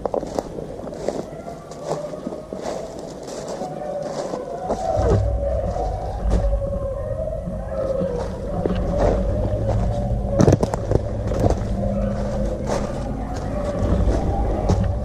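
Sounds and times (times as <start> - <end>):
twigs cracking: 0.0 - 15.0
distant hounds baying: 0.4 - 15.0
low rumble: 4.8 - 15.0.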